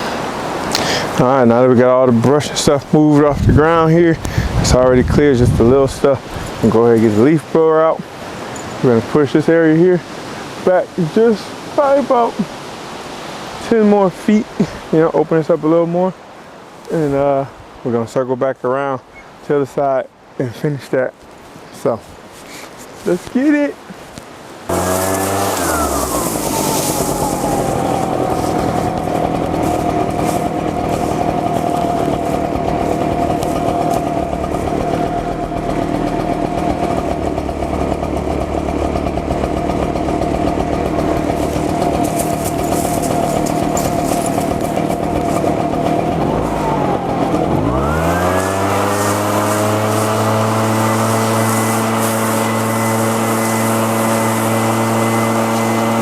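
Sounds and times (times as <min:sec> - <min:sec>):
leaf blower engine: 0:00.0 - 0:09.5, 0:24.7 - 0:56.0.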